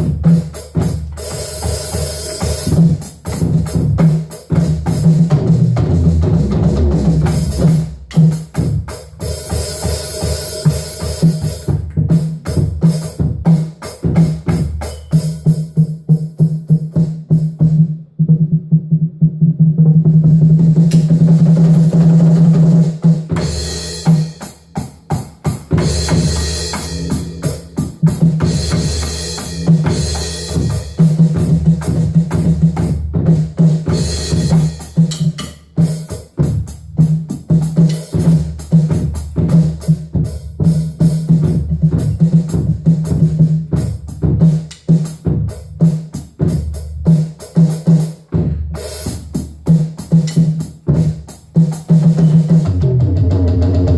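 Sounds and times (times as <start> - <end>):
drum kit playing: 0.0 - 53.9
drum roll on low drums: 2.6 - 8.9, 51.9 - 53.9
cymbal crashes: 25.8 - 30.9.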